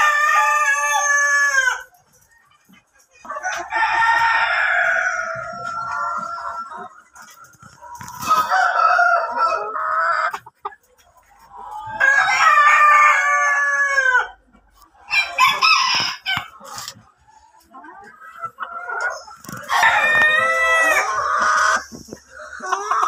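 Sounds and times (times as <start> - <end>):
rooster crowing: 15.1 - 16.4, 19.7 - 21.1.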